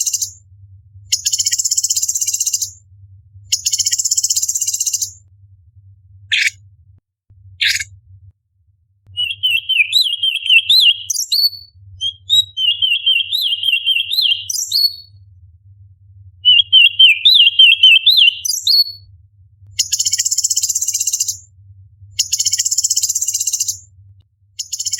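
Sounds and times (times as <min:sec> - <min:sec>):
bird singing wavering chatter: 0:09.2 - 0:15.0, 0:16.5 - 0:18.8.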